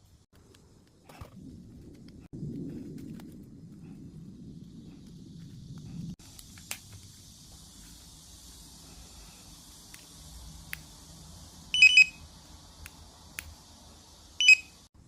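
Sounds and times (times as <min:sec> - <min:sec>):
faint steady hiss: 0:00.0 - 0:15.0
short electronic beeps: 0:11.8 - 0:12.2, 0:14.4 - 0:14.8.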